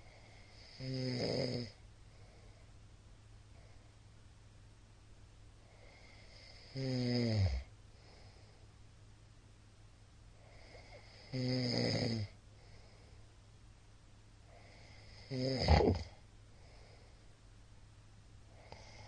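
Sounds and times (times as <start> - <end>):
quiet breathing: 0.0 - 4.2, 5.5 - 9.0, 10.3 - 13.7, 14.4 - 19.0
man snoring: 0.2 - 1.8, 5.8 - 7.7, 10.5 - 12.4, 14.6 - 16.2.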